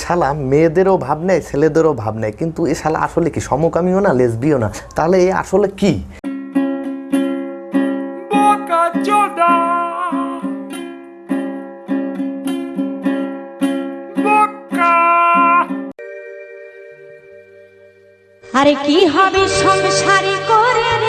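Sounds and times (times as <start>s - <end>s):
plucked string instrument strumming: 6.2s - 17.7s.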